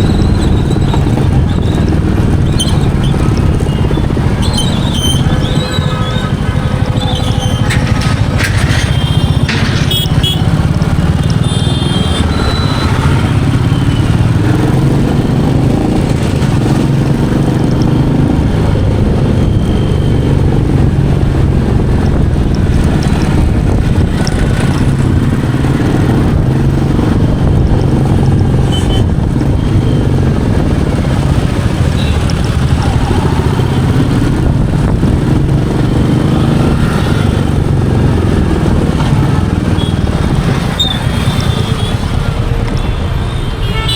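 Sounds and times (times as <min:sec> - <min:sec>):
motorcycle engine running: 0:00.0 - 0:42.6
high beeps: 0:11.8 - 0:14.1, 0:19.4 - 0:20.3.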